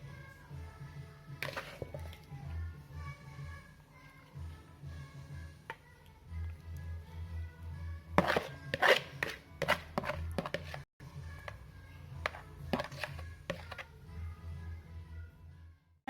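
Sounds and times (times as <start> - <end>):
soft background music: 0.0 - 16.0.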